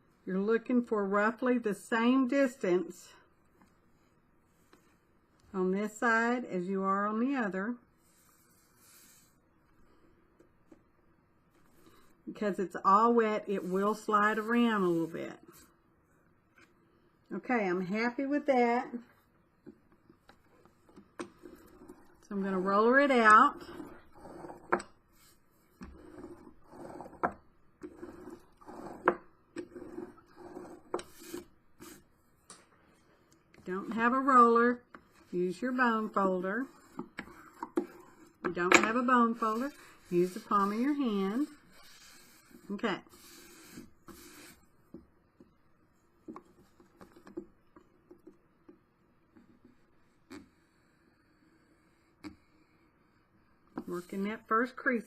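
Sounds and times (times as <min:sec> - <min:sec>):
hand roller rolling over paper: 0:21.4 - 0:32.0, 0:33.6 - 0:42.8.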